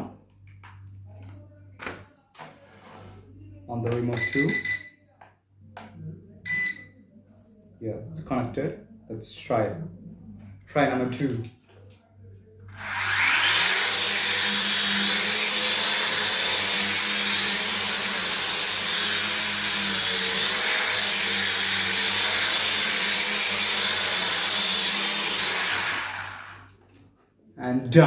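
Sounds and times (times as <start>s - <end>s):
toy drone propellers whirring: 12.7s - 26.7s.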